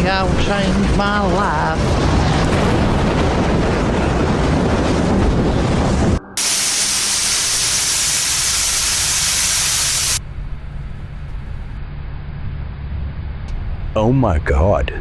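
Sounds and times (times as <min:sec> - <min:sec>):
low rumble: 0:00.0 - 0:11.8
rushing wind hiss: 0:02.0 - 0:11.8.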